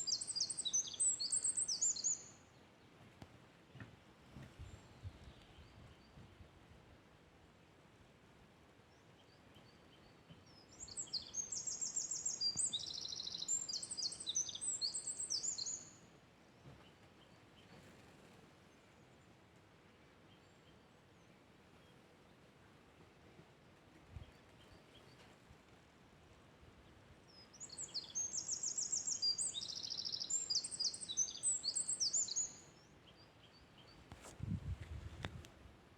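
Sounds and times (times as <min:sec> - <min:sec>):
songbirds trilling and chirping: 0:00.0 - 0:03.1, 0:08.9 - 0:22.4, 0:26.8 - 0:34.4.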